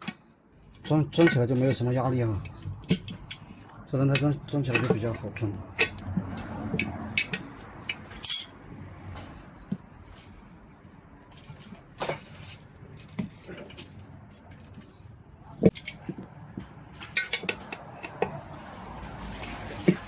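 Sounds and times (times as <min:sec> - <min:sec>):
tools clinking on metal wheel rim: 0:00.8 - 0:08.6, 0:15.6 - 0:16.3, 0:16.9 - 0:18.4.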